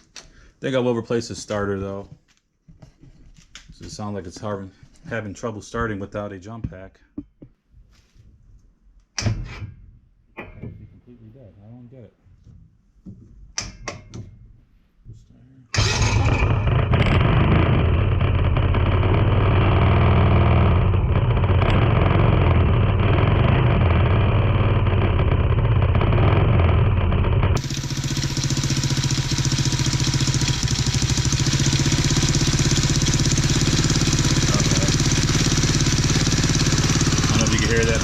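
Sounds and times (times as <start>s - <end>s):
small engine running: 15.8s - 38.0s.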